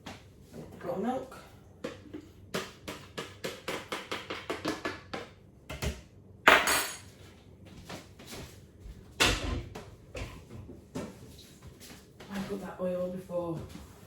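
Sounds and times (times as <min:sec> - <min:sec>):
kitchen utensils clattering: 0:06.5 - 0:07.1.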